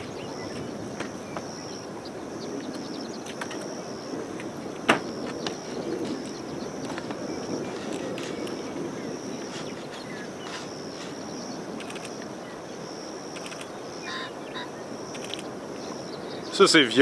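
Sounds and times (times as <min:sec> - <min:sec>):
rushing wind: 0:00.0 - 0:17.0
faint clicks: 0:11.8 - 0:12.3, 0:13.4 - 0:13.7, 0:15.1 - 0:15.5.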